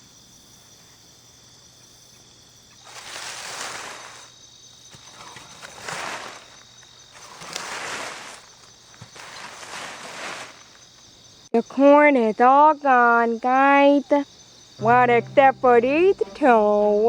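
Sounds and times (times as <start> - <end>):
insects trilling: 0.0 - 17.0
rustling noise: 2.8 - 11.0.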